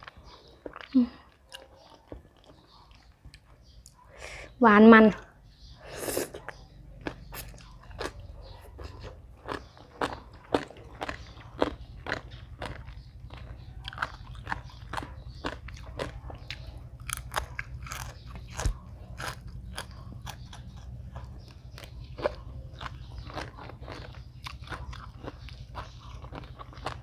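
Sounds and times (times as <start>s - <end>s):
person chewing food: 0.0s - 4.2s, 5.6s - 27.0s
food crunches: 6.4s - 27.0s.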